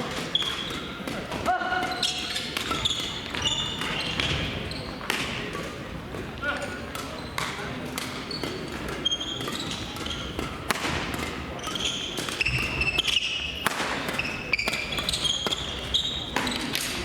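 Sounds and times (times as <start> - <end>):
racket hitting shuttlecock: 0.0 - 17.0
shoes squeaking on court floor: 0.0 - 17.0.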